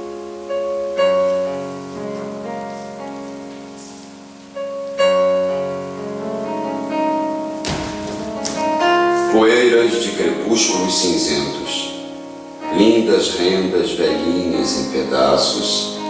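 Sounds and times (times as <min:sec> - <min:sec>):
hissing rustle: 0:00.0 - 0:05.0
slow instrumental music: 0:00.0 - 0:16.0
slow solo piano chords: 0:00.0 - 0:16.0.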